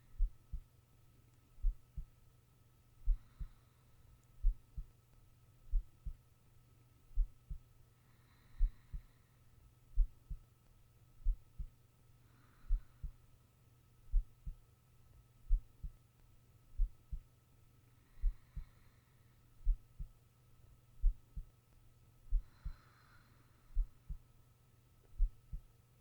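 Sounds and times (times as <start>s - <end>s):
faint steady hum: 0.0s - 26.0s
heartbeat double thump: 7.2s - 7.6s, 11.2s - 11.7s, 14.1s - 14.6s, 15.5s - 15.9s, 16.8s - 17.2s, 21.0s - 21.4s, 25.2s - 25.7s.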